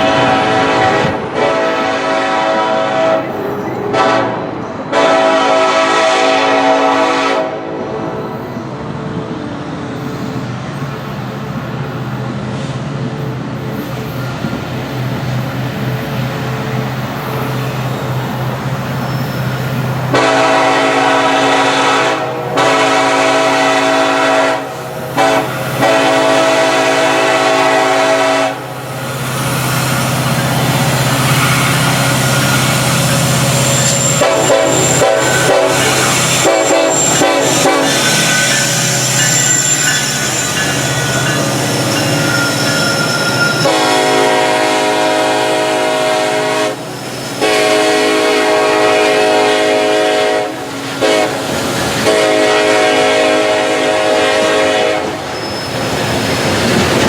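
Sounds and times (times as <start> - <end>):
locomotive air horn: 0.0 - 8.1, 20.1 - 28.8, 31.2 - 55.8
rail noise: 0.0 - 57.0.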